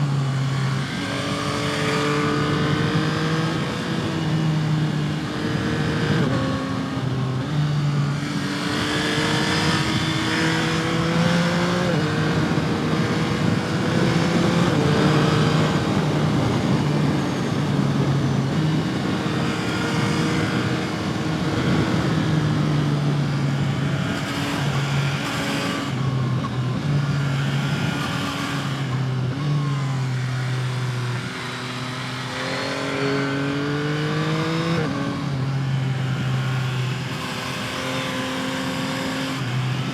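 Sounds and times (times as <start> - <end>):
motorcycle engine revving: 0.0 - 39.9
wind rush: 12.0 - 23.0.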